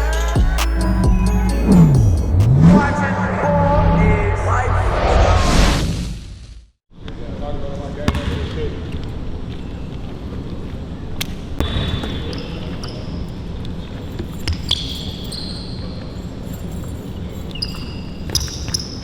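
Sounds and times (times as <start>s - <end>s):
basketball bouncing on court: 8.1s - 8.6s
shoe squeaks: 11.7s - 19.0s.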